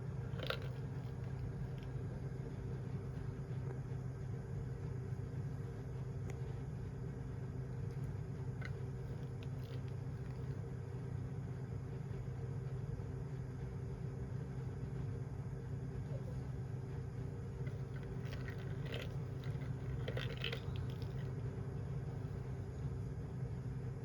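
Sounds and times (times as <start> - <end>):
kitten playing clicks and rustles: 0.0 - 4.0, 4.7 - 11.0, 17.2 - 21.4
steady low hum: 0.0 - 24.0.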